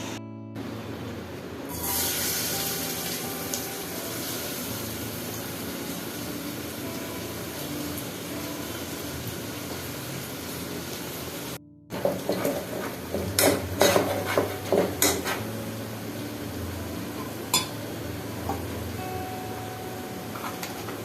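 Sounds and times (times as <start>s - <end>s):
steady hiss: 0.0s - 11.6s.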